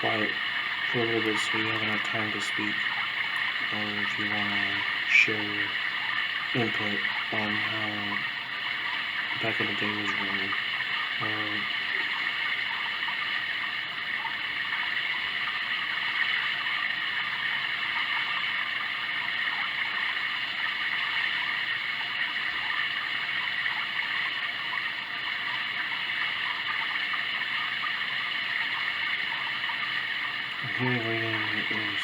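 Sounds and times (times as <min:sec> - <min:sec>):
running stream water hiss: 0:00.0 - 0:13.9, 0:30.0 - 0:32.0.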